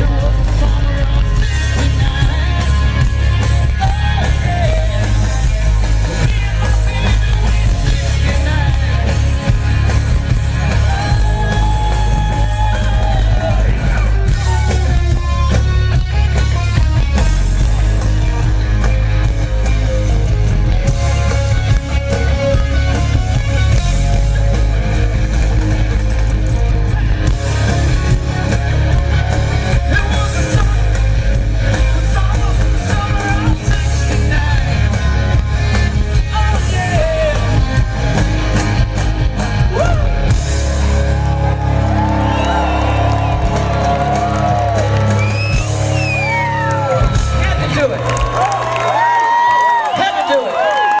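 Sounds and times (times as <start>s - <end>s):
person singing: 0.0s - 9.5s, 29.7s - 37.7s
live rock band playing: 0.0s - 51.0s.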